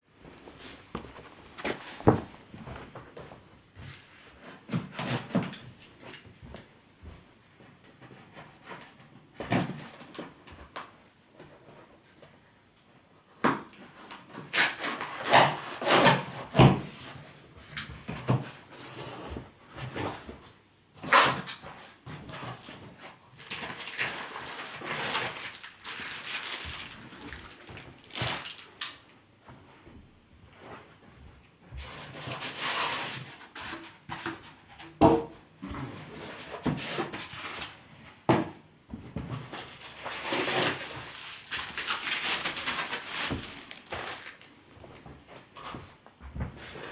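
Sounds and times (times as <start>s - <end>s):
packaging rustling and scraping: 0.3s - 2.6s, 21.0s - 29.1s, 39.3s - 46.9s.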